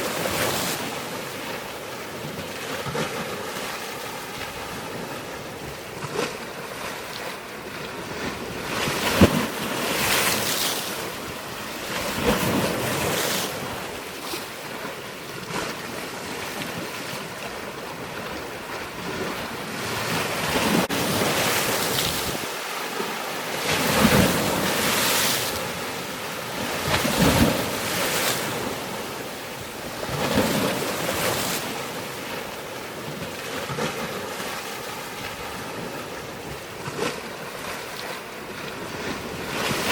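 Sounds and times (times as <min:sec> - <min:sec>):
wind on microphone: 0:15.4 - 0:22.6.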